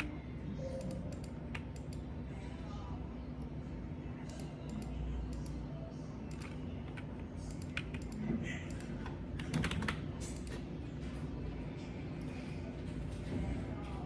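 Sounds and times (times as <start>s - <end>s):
keyboard typing: 0.0s - 2.1s, 6.2s - 11.3s
low steady hum: 0.0s - 14.0s.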